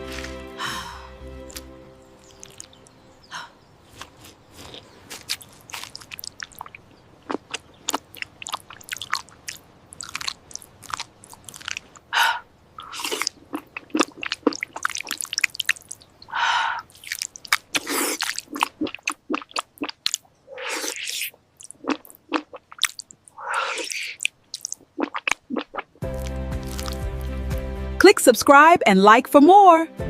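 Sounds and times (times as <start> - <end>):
chewing and biting food: 2.3 - 2.8, 3.9 - 12.1, 12.8 - 27.4.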